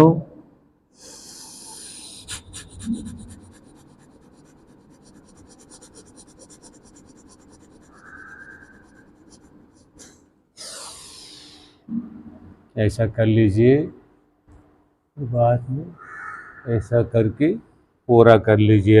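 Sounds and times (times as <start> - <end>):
rapid nose breathing: 1.0 - 11.7.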